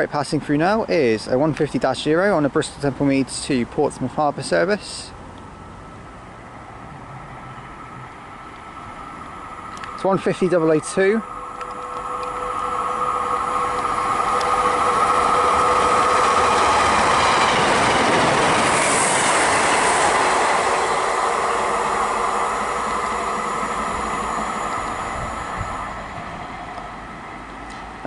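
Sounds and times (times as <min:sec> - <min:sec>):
diesel train passing: 0:00.0 - 0:28.0
train wheel noise: 0:07.5 - 0:28.0.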